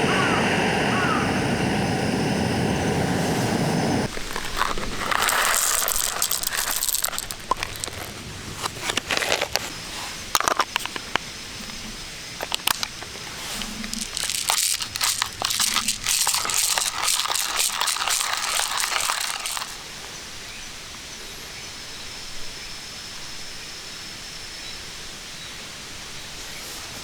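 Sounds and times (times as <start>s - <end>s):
rustling crinkling handling noise: 4.1s - 11.8s, 12.4s - 19.8s.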